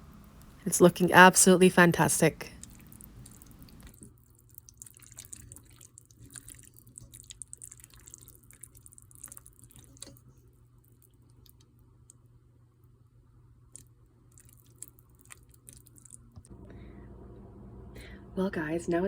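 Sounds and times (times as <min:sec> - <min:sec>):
low steady hum: 0:00.0 - 0:04.0, 0:15.8 - 0:19.0
stirring thick pasta squelches: 0:02.6 - 0:11.8, 0:13.7 - 0:16.4.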